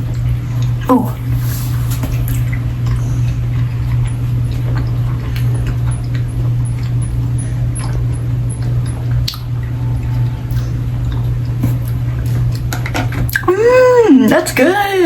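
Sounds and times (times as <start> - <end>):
steady low hum: 0.0 - 15.0
wet mouth clicks and smacks: 9.1 - 9.6.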